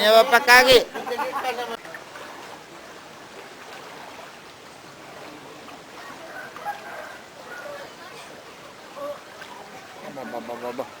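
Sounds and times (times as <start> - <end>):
rushing floodwater: 0.0 - 11.0
faint distant calls: 5.0 - 11.0.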